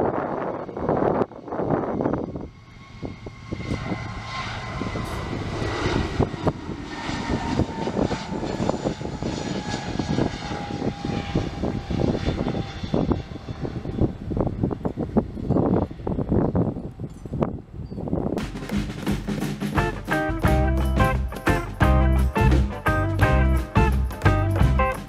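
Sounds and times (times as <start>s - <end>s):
jet engines whining: 0.0s - 16.8s, 18.2s - 25.0s
wind buffeting microphone: 0.0s - 18.4s.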